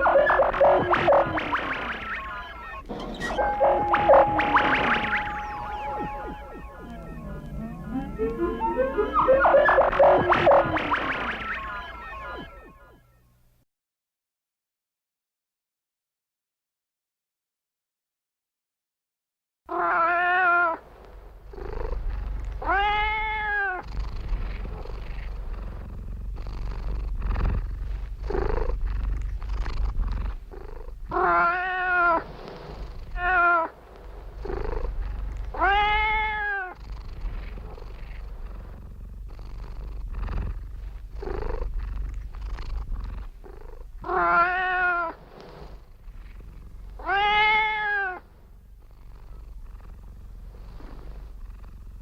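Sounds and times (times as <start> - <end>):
cat purring: 0.0 - 12.6, 20.8 - 52.0
cat meowing: 19.7 - 20.8, 22.6 - 23.8, 31.1 - 32.2, 33.2 - 33.7, 34.5 - 36.8, 44.0 - 45.2, 47.0 - 48.2.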